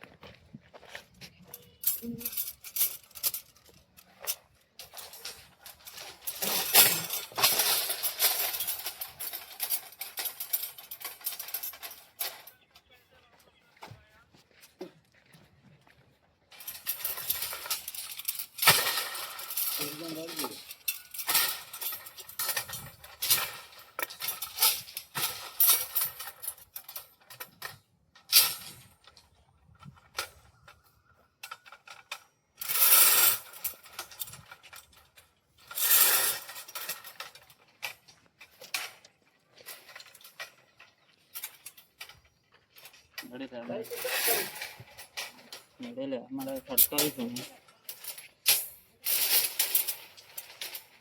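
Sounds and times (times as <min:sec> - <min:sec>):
voices: 0:01.2 - 0:02.9, 0:11.9 - 0:15.0, 0:19.6 - 0:20.7
steel pieces clanking: 0:01.5 - 0:12.6, 0:16.5 - 0:29.4, 0:31.4 - 0:51.0.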